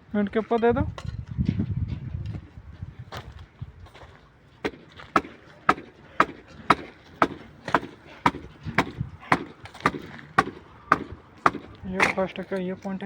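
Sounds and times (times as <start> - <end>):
hammer blows: 4.6 - 11.8.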